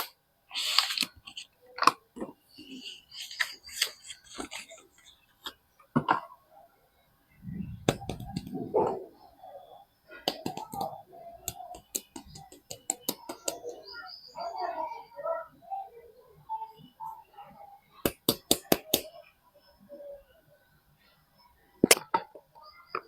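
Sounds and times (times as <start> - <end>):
sharp clicks: 10.3 - 13.6.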